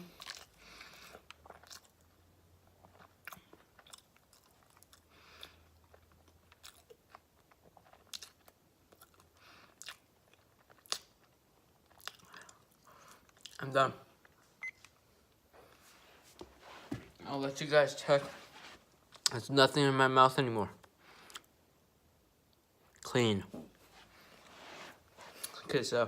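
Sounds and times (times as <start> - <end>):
faint chewing: 0.0 - 13.6.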